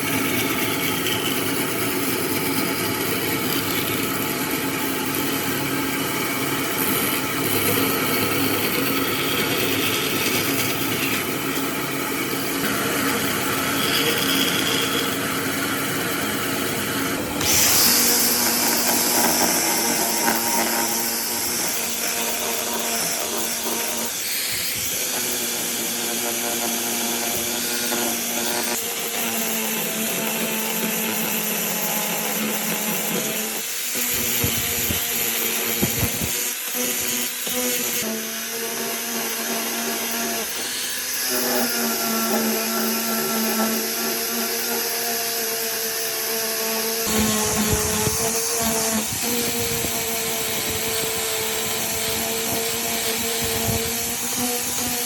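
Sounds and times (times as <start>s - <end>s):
electric power tool running: 0.0s - 55.0s
hiss of cutting or sanding: 12.3s - 38.5s, 39.2s - 55.0s.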